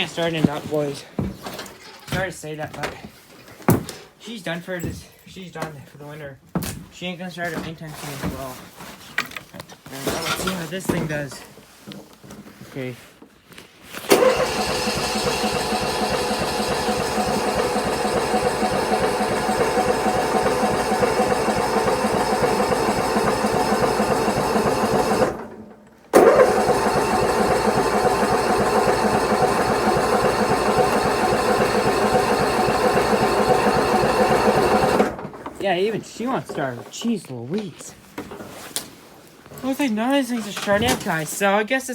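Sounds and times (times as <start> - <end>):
engine starter cranking: 14.1 - 35.4.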